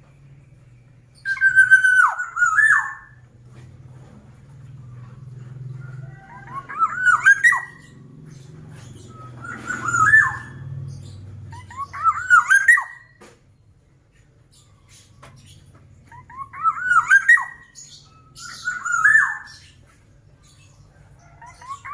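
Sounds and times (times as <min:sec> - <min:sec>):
bird singing fluty whistles: 0:01.1 - 0:03.2, 0:16.2 - 0:19.6.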